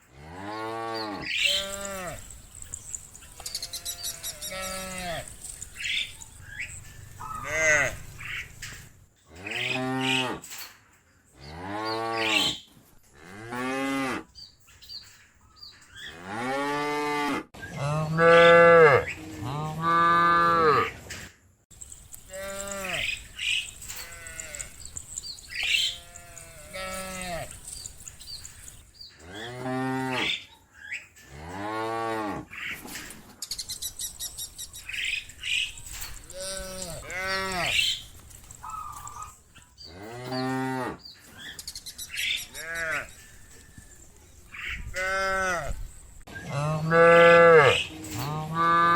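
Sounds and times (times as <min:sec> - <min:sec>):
cattle mooing: 0:03.6 - 0:05.4, 0:07.1 - 0:08.3, 0:09.4 - 0:10.5, 0:22.3 - 0:24.9, 0:25.6 - 0:27.6, 0:46.5 - 0:48.9.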